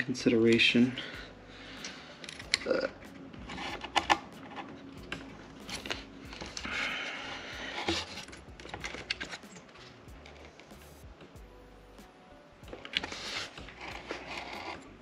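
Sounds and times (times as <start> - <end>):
computer parts clicking and scraping: 1.8 - 10.9, 12.8 - 15.0.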